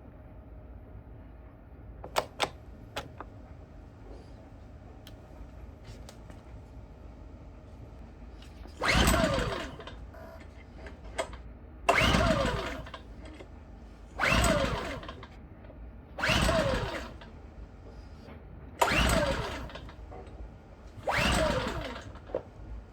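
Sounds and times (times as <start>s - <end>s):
generator engine cranking: 8.4s - 13.6s, 14.2s - 15.4s, 16.2s - 17.4s, 18.8s - 22.9s.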